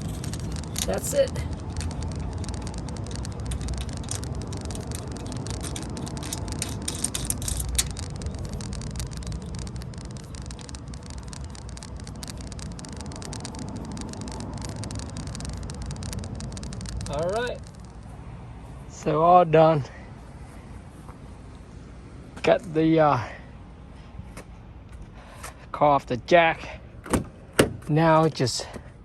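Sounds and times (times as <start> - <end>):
steady low rumble: 0.0 - 22.3.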